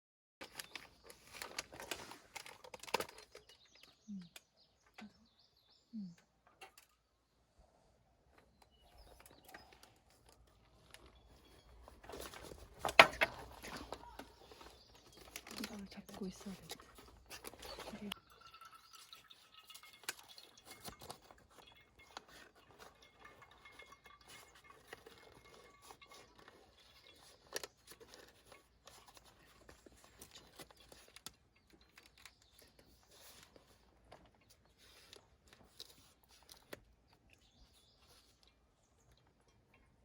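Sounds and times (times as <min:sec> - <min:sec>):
small clicks and rustles of handling: 0:00.4 - 0:05.2, 0:08.3 - 0:40.0.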